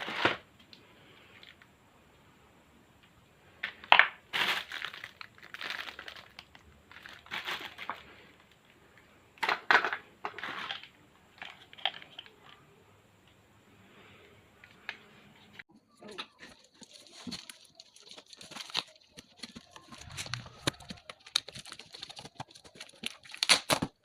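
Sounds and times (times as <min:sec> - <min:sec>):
packaging crinkling and rustling: 0:03.8 - 0:08.6, 0:16.3 - 0:24.0.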